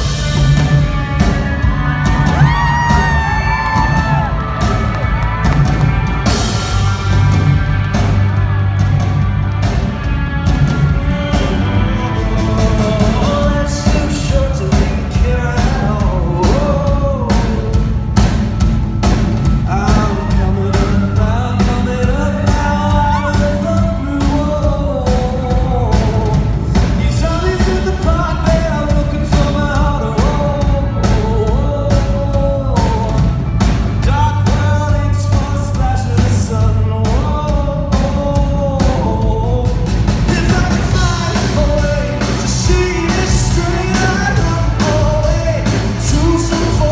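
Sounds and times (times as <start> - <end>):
bass guitar: 0.0 - 46.9
drum beat: 0.0 - 46.9
man singing: 10.6 - 18.4, 19.5 - 46.9.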